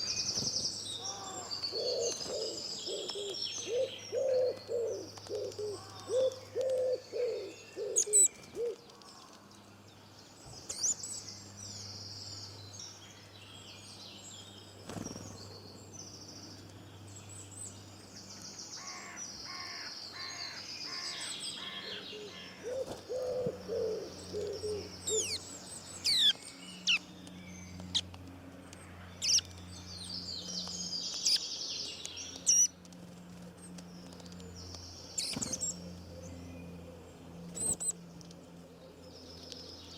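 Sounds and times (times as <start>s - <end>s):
birds singing and chirping: 0.0s - 39.9s
steady low hum: 0.0s - 39.9s
low cooing call: 1.0s - 8.8s, 21.0s - 25.4s.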